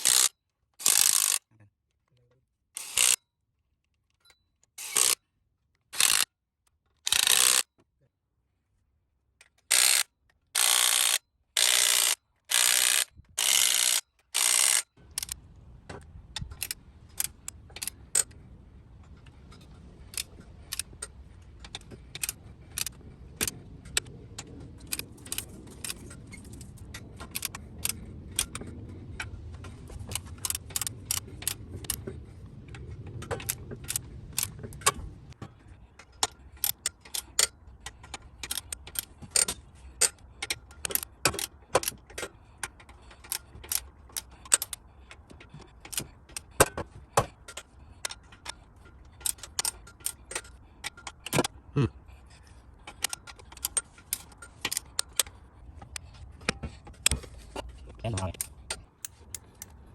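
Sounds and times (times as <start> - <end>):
metallic tool clicks: 0.0 - 1.5, 2.8 - 3.2, 4.2 - 5.2, 6.0 - 6.3, 7.0 - 7.6, 9.4 - 15.4, 16.4 - 18.4, 19.2 - 24.1, 30.1 - 32.0, 36.2 - 44.9, 47.5 - 51.5, 52.9 - 57.3.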